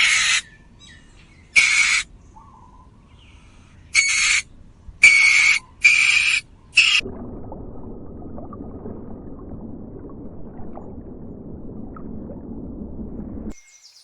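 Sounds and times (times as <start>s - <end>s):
bird screeching: 0.0s - 1.0s, 1.6s - 2.1s, 4.0s - 7.0s.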